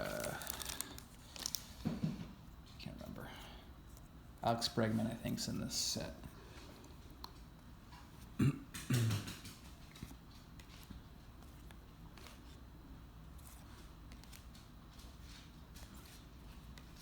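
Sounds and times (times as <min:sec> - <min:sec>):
man clearing his throat: 0:08.4 - 0:09.4.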